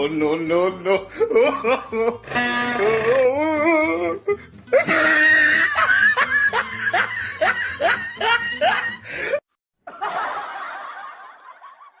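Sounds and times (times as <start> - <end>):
person laughing: 0.8 - 2.3, 4.0 - 12.0.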